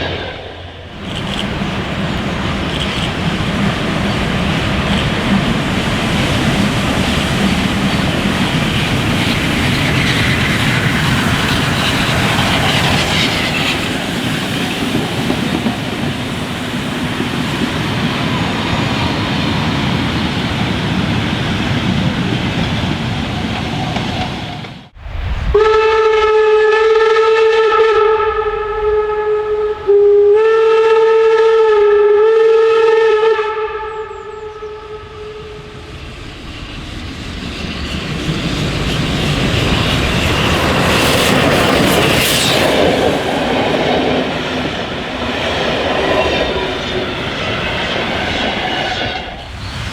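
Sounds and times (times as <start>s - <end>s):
steam locomotive rumbling: 0.0s - 49.9s
steam whistle blowing: 25.6s - 35.9s.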